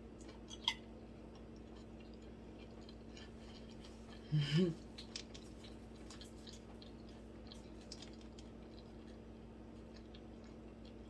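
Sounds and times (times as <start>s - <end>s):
chewing mouth clicks: 5.0s - 9.2s.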